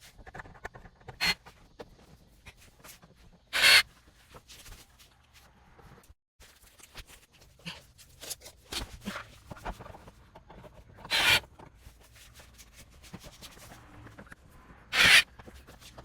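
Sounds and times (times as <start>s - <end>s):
impact drill driving screws: 3.6s - 3.8s, 15.0s - 15.2s.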